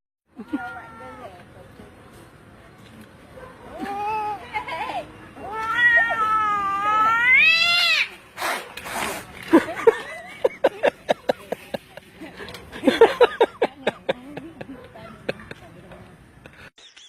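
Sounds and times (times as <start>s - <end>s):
cat yowling: 5.4s - 8.1s.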